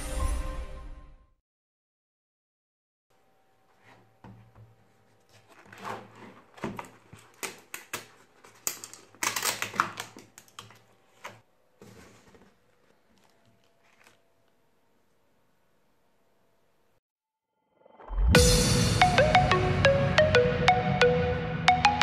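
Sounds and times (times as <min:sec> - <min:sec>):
rustling handling noise: 0:03.6 - 0:15.2.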